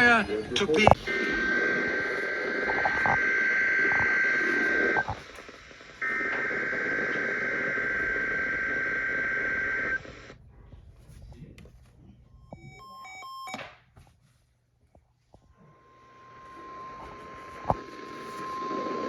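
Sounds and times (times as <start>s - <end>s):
radio static hiss: 0.0s - 12.8s, 15.5s - 19.0s
emergency alert tone: 0.8s - 5.2s.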